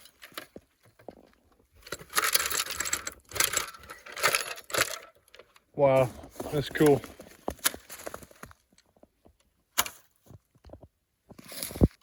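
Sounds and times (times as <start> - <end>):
handling clicks and knocks: 0.0 - 5.6, 6.2 - 10.0.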